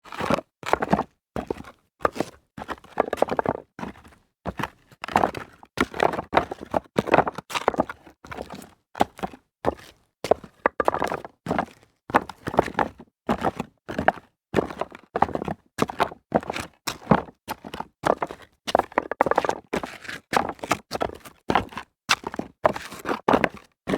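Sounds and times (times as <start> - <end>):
footsteps crunching on loose rocks: 10.6 - 11.3, 18.0 - 23.6.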